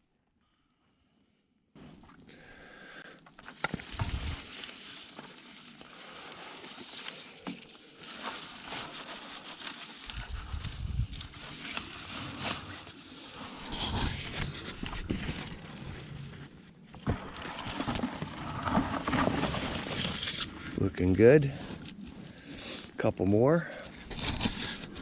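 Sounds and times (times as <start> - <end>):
soil and roots rustling: 1.9 - 25.0.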